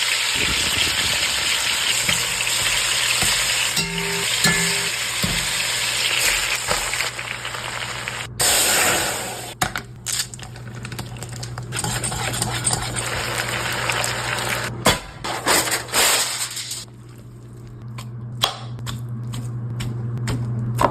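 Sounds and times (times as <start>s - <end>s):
liquid hissing in cooking pot: 0.0s - 3.7s
steady hum: 0.3s - 8.6s.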